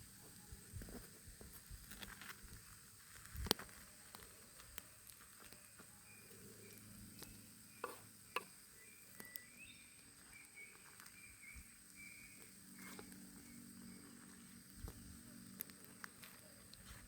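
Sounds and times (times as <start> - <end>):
faint high insect drone: 0.0 - 17.0
campfire crackling and popping: 0.3 - 5.8, 14.7 - 16.8
short insect chirps: 4.8 - 16.8.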